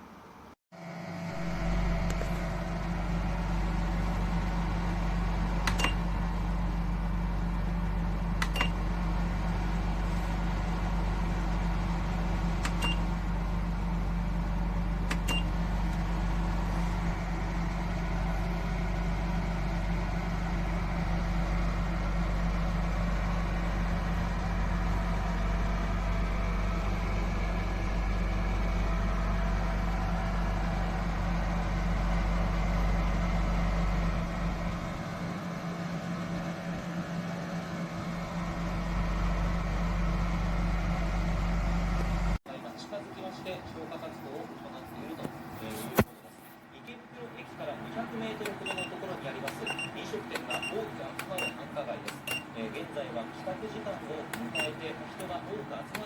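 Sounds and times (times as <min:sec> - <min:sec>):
mechanical hum with deep rumble: 0:00.0 - 0:56.0.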